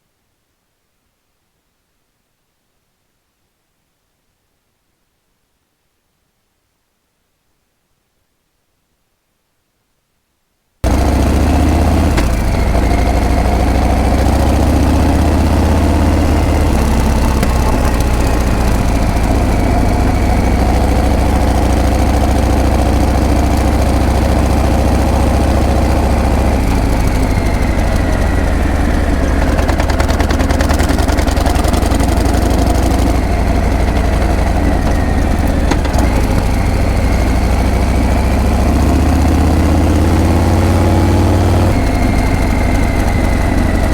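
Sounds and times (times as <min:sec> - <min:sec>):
motorcycle engine and exhaust: 0:10.8 - 0:43.9.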